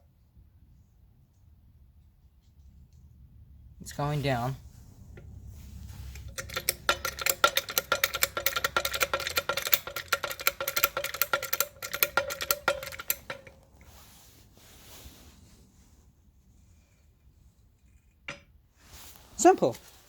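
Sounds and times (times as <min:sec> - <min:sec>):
trolley jack metallic clicking: 0:06.0 - 0:13.9.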